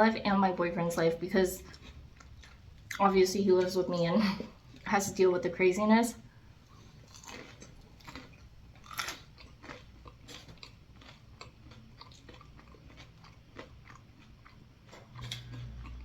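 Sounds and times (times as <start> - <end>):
person chewing food: 1.6 - 3.0, 6.6 - 16.0.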